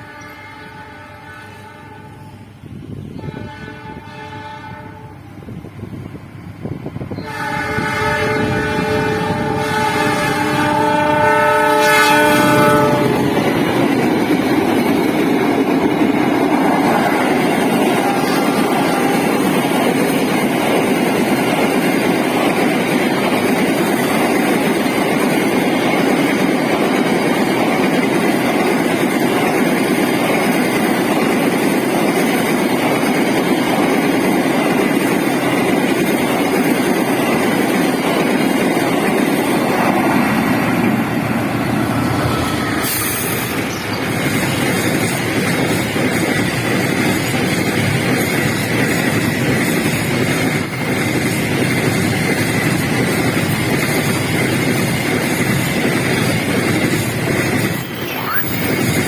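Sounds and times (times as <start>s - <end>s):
locomotive horn chord: 0.0s - 2.5s, 3.2s - 5.2s, 7.2s - 13.4s, 17.1s - 19.5s
train rumbling past: 0.0s - 59.0s.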